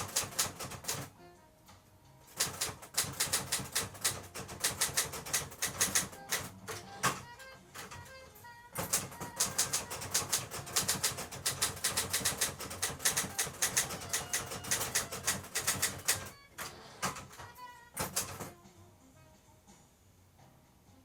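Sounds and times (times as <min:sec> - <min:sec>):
typewriter key strikes: 0:00.0 - 0:01.1, 0:02.3 - 0:08.1, 0:08.8 - 0:18.5.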